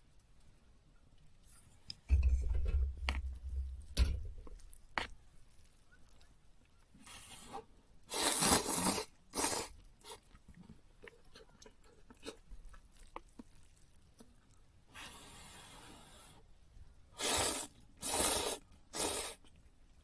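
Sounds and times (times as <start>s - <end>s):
rustling and scraping: 1.4s - 5.8s.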